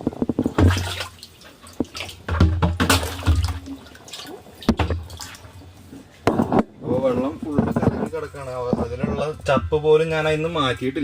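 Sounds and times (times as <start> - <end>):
water splashing and pouring: 0.0 - 5.8.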